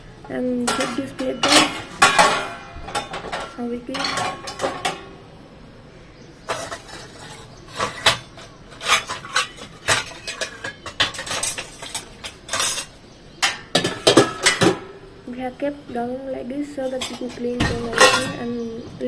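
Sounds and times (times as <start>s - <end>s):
dishes clinking and clattering: 0.0s - 19.0s.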